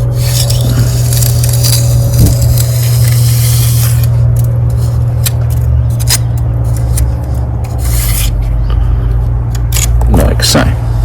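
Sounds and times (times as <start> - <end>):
trowel scraping mortar: 0.0 - 8.5
steady low hum: 0.0 - 11.0.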